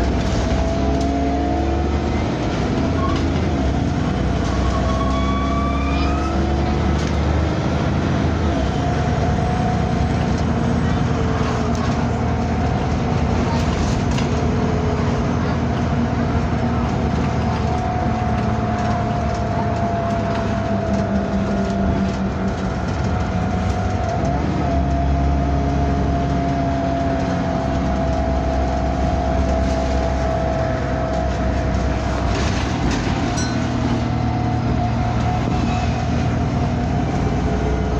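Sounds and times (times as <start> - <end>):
bus engine running: 0.0 - 37.9.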